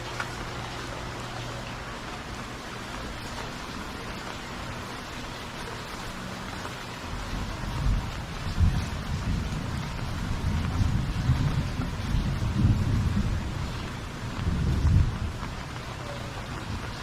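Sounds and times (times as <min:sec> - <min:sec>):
heavy rain hissing: 0:00.0 - 0:17.0
low uneven rumble: 0:00.0 - 0:17.0.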